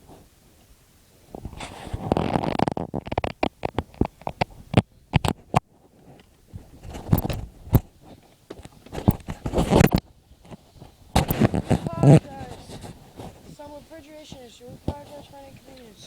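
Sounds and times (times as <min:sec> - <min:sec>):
sharp clicks and crunching: 0:01.4 - 0:13.6.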